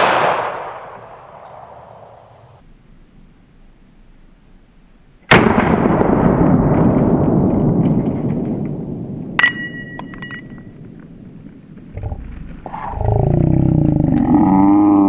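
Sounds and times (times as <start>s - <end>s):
pistol shot with rolling tail: 0.0s - 2.6s, 5.3s - 11.3s
sharp metallic ring: 9.4s - 10.7s.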